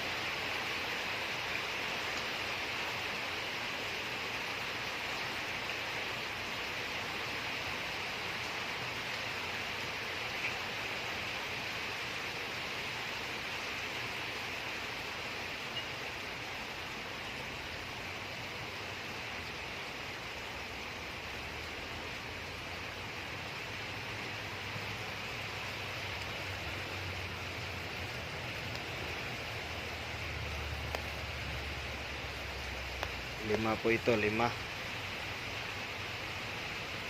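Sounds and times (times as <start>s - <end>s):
steady hiss: 0.0s - 37.0s
faint clicks: 28.6s - 29.0s, 30.8s - 31.2s, 33.0s - 33.2s.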